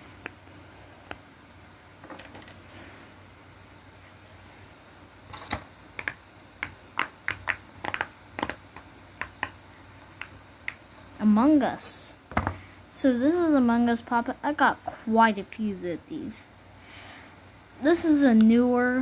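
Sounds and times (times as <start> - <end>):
fidget toy clicking and popping: 6.0 - 9.6.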